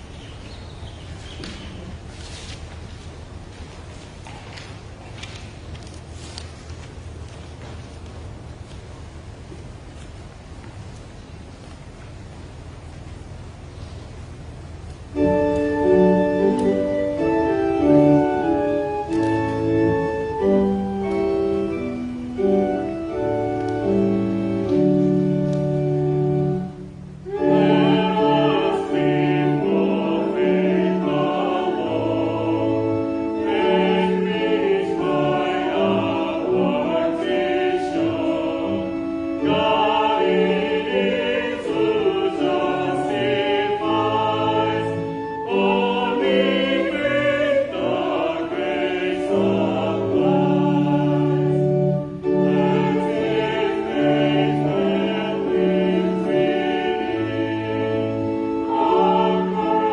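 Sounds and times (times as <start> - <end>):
choir singing a hymn: 15.2 - 59.9
instrumental accompaniment: 15.2 - 59.9.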